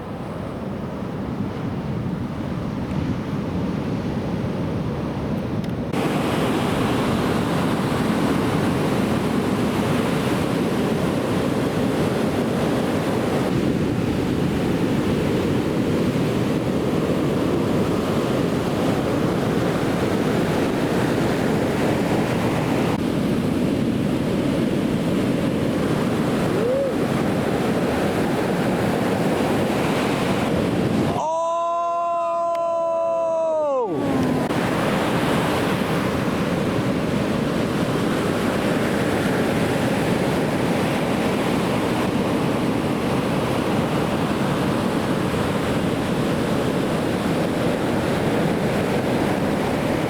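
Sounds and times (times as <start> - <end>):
wind buffeting microphone: 0.0 - 31.2, 33.8 - 50.0
ocean waves breaking: 0.0 - 31.3, 32.3 - 50.0.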